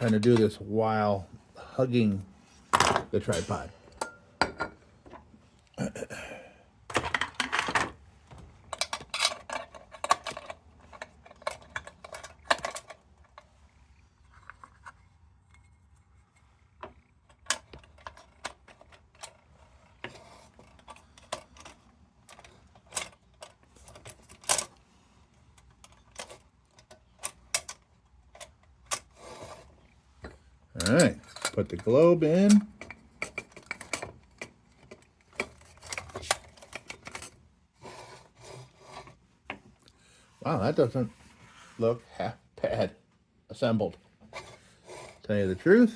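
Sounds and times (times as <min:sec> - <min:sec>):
metal parts clicking and clinking: 0:02.8 - 0:04.2, 0:08.7 - 0:13.5, 0:20.5 - 0:24.8, 0:30.8 - 0:37.4.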